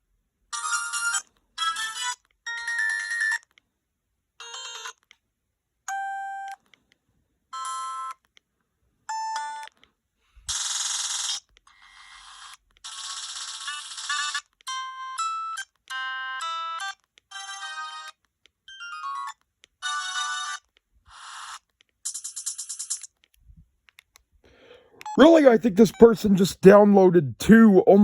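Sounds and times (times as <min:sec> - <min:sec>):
phone ringtone melodies: 0:00.5 - 0:03.4, 0:04.4 - 0:05.0, 0:07.5 - 0:08.2, 0:09.1 - 0:09.7, 0:12.8 - 0:20.6.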